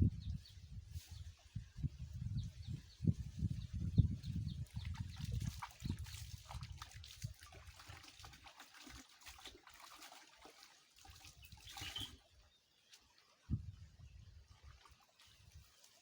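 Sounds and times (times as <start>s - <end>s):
stream water trickling: 4.1s - 16.0s
clothes washed in water: 4.3s - 13.5s.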